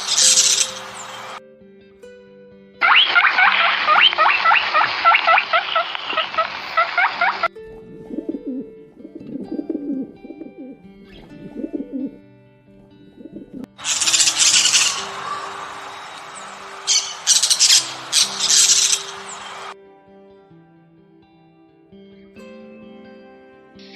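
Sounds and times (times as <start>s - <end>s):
bird cooing: 0.0s - 1.4s, 2.8s - 12.2s, 13.0s - 19.8s
birds chirping: 0.0s - 1.4s, 2.8s - 12.2s, 13.0s - 19.8s
harsh bird call: 2.8s - 7.5s, 13.8s - 19.8s.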